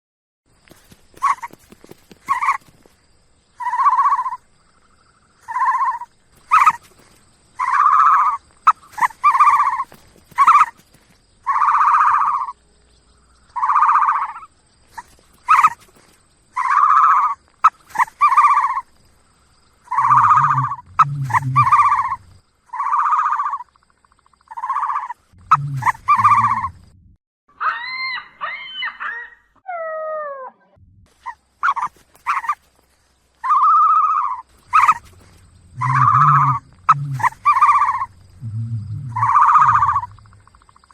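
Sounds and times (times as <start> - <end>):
ostrich hooting calls: 19.8 - 23.6, 24.5 - 26.8, 33.4 - 40.9
deeper ostrich call: 19.9 - 23.6, 24.5 - 26.8, 33.4 - 40.6.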